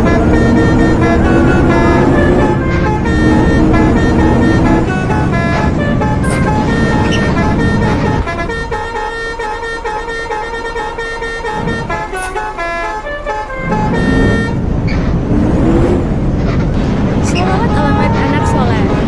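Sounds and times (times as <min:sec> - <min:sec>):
bus horn playing a tune: 0:00.0 - 0:14.8
low rumble: 0:13.5 - 0:19.0.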